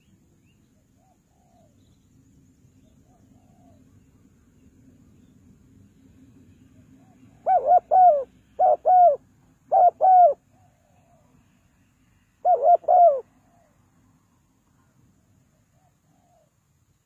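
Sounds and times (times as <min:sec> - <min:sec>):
dove cooing: 0:01.0 - 0:01.7, 0:03.0 - 0:03.9, 0:07.0 - 0:11.3, 0:12.4 - 0:13.7, 0:15.7 - 0:16.6.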